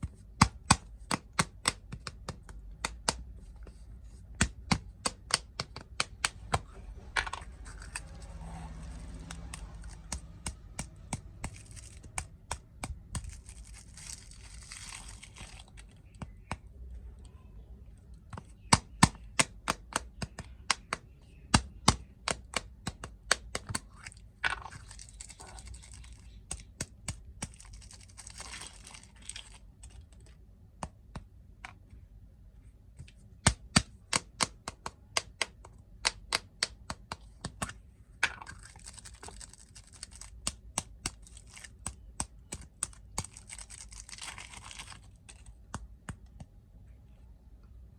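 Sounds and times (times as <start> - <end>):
sharp clicks and taps: 0.0 - 3.4, 4.3 - 7.5, 33.0 - 37.8, 45.2 - 46.6
plastic wrapper crinkling and tearing: 7.6 - 16.2, 23.9 - 26.7, 27.5 - 30.3, 38.4 - 45.6.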